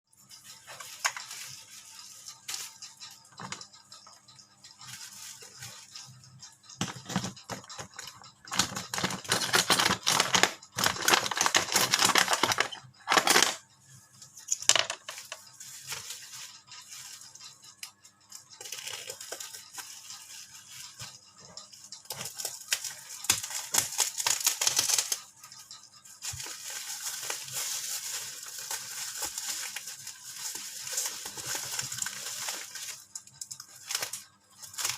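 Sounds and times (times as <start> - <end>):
packaging rustling and tearing: 8.5 - 13.6, 22.1 - 25.2, 26.2 - 33.0.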